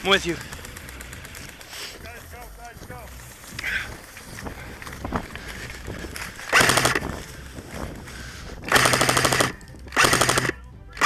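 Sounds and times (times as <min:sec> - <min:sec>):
airsoft gun full-auto bursts: 0:06.4 - 0:07.1, 0:08.7 - 0:11.0.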